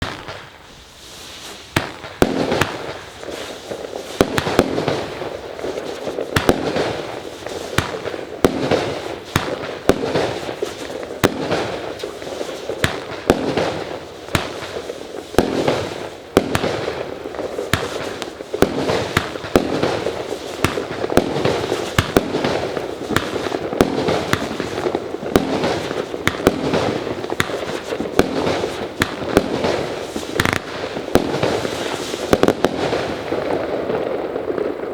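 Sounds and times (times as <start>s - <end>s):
firework bangs: 0.0s - 34.9s
firework rushing hiss: 0.1s - 33.6s.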